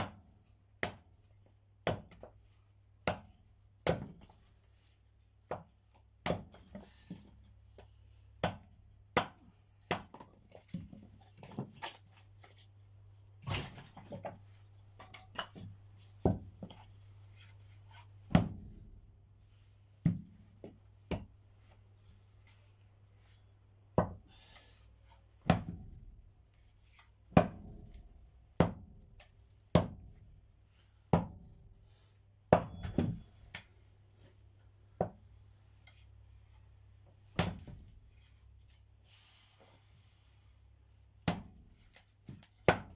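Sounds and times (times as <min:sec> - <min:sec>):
axe chopping wood: 0:00.0 - 0:01.1, 0:01.8 - 0:02.3, 0:03.0 - 0:04.2, 0:05.5 - 0:06.7, 0:08.4 - 0:10.9, 0:18.3 - 0:18.8, 0:25.4 - 0:25.9, 0:27.3 - 0:27.9, 0:28.5 - 0:30.1, 0:32.5 - 0:33.3, 0:37.3 - 0:37.8, 0:41.2 - 0:41.6, 0:42.3 - 0:42.9.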